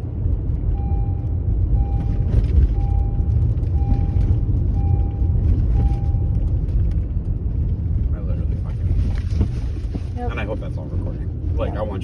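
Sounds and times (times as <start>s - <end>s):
car interior rumble: 0.0s - 12.0s
electronic warning chime beeping: 0.8s - 6.4s.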